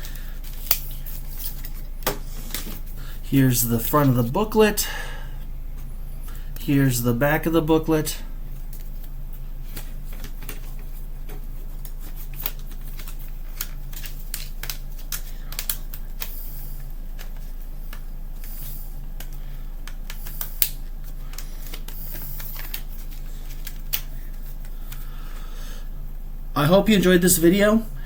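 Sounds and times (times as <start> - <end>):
paper rustling: 0.0 - 4.4, 8.6 - 25.4.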